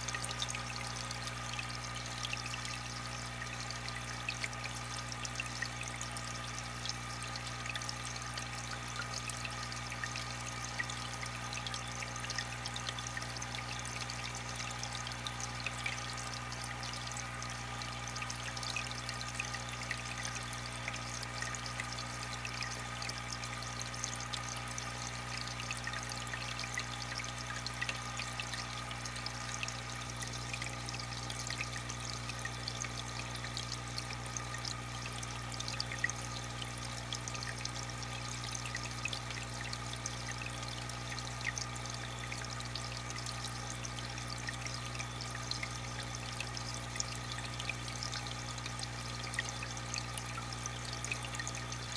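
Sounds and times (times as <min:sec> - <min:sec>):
aquarium pump hum: 0:00.0 - 0:51.9
small splashy drips: 0:00.0 - 0:51.9
water trickling and bubbling: 0:00.0 - 0:51.9.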